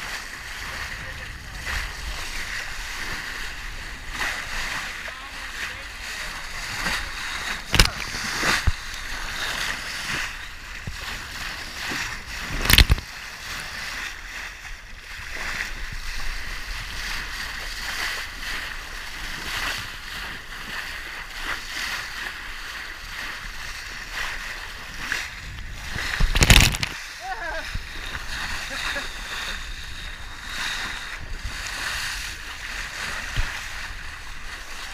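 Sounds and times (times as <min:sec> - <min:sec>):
sharp water splashes: 0:00.0 - 0:34.9
water rushing past boat hull: 0:00.0 - 0:34.9.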